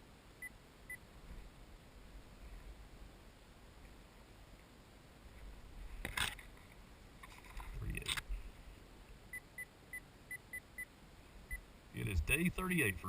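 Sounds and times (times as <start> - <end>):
rustling and handling noise: 3.8 - 8.9.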